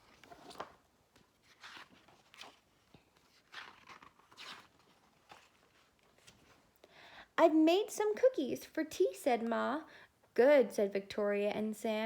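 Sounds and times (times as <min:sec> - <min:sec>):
book pages rustling: 0:00.0 - 0:06.8.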